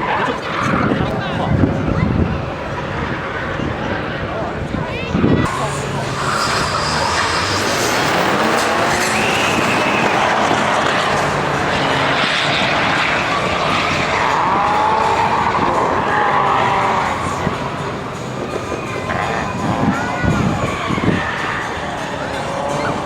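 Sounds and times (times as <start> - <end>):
car engine running hard: 0.0 - 23.0
tyres squealing: 5.4 - 23.0.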